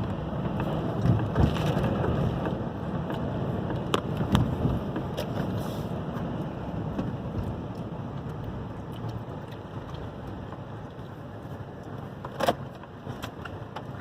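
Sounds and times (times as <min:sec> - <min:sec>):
wind buffeting microphone: 0:00.0 - 0:10.9.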